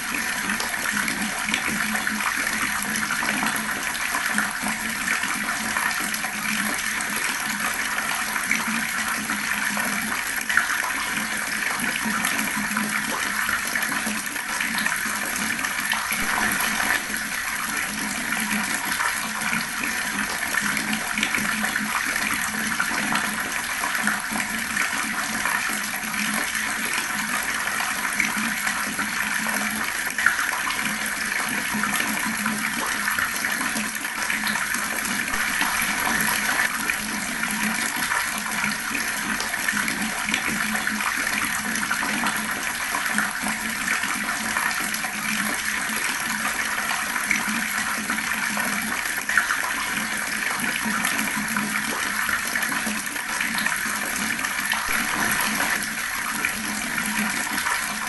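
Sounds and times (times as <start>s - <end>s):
water gushing: 0.0s - 58.0s
sharp water splashes: 16.2s - 17.7s, 35.3s - 36.8s, 54.8s - 57.4s.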